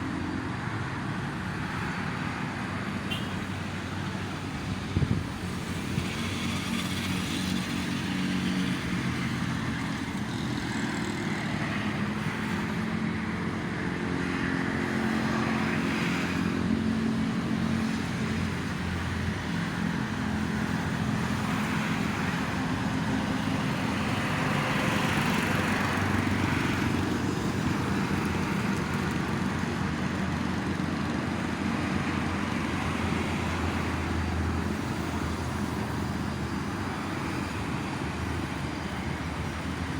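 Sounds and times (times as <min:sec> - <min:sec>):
road traffic hum: 0:00.0 - 0:39.9
vehicles passing: 0:00.0 - 0:39.9.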